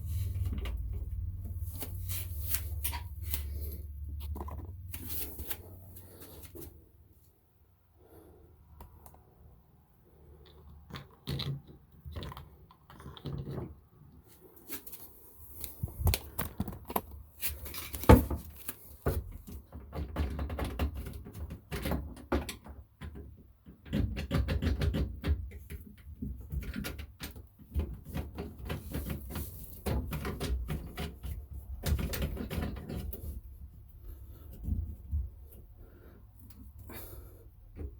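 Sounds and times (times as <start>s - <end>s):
clicks and taps of plumbing parts: 15.6s - 33.6s, 36.4s - 37.9s.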